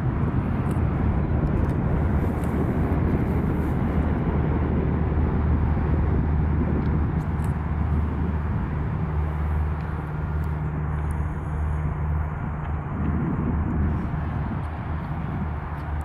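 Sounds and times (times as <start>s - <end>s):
jet engines rumbling: 0.0s - 16.0s.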